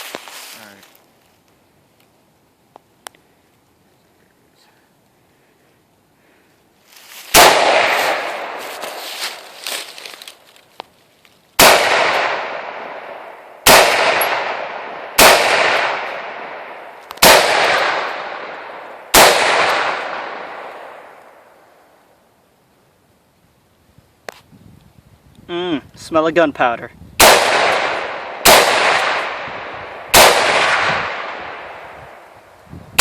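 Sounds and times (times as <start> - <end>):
rifle shots with echo: 7.3 - 9.6, 11.6 - 21.4, 27.2 - 32.2.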